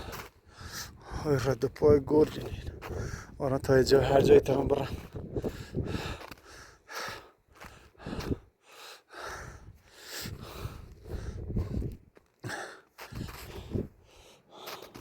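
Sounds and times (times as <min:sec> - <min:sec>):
person breathing heavily: 0:00.0 - 0:01.2, 0:02.8 - 0:03.4, 0:05.0 - 0:15.0.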